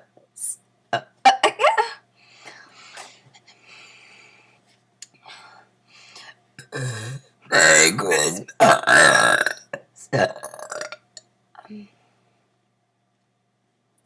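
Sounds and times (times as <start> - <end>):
girl breathing: 2.2 - 4.6, 5.2 - 6.4
low burp: 6.6 - 11.1.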